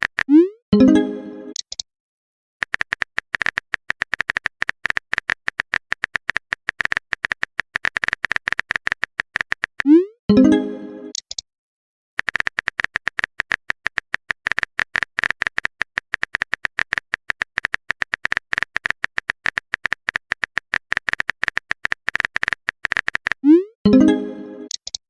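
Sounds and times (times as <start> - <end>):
phone keyboard typing clicks: 0.0 - 0.4, 1.5 - 1.8, 2.6 - 10.0, 12.2 - 23.4, 24.7 - 25.0.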